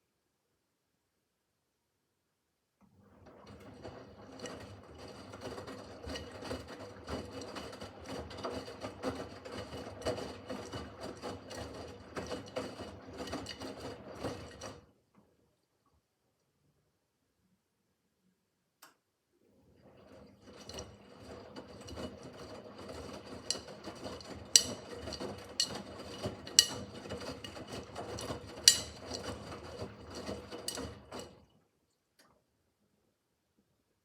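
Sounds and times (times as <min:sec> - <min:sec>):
washing machine drum turning: 0:19.9 - 0:31.4.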